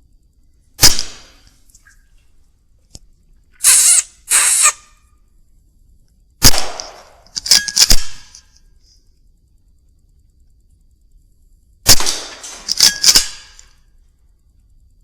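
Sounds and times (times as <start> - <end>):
air rifle shot: 0.8 - 1.4, 3.6 - 4.8, 6.4 - 8.3, 11.8 - 13.6
sharp mechanical clicks: 3.6 - 4.9, 6.4 - 8.4, 11.9 - 13.7
short hissing rustles: 3.6 - 4.9.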